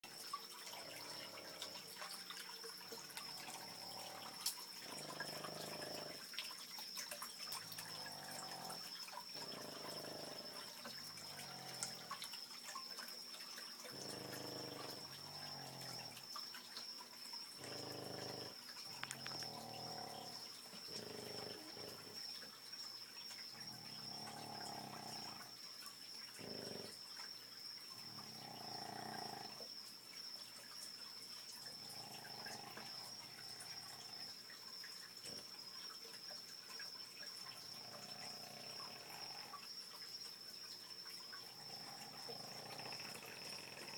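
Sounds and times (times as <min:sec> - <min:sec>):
dogs snoring: 0:00.1 - 0:02.2, 0:03.0 - 0:06.4, 0:07.5 - 0:12.3, 0:13.8 - 0:16.4, 0:17.5 - 0:22.4, 0:23.5 - 0:25.6, 0:26.2 - 0:27.0, 0:28.0 - 0:29.7, 0:31.7 - 0:34.4, 0:35.2 - 0:35.5, 0:37.6 - 0:39.6, 0:41.4 - 0:43.9.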